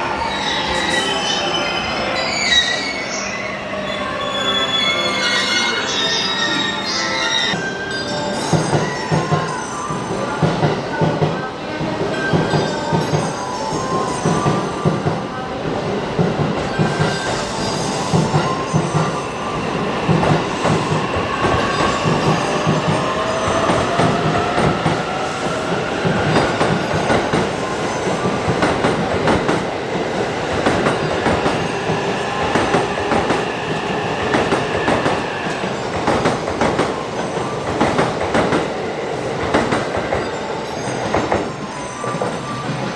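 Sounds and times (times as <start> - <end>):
electric train whine: 0.0 - 12.2.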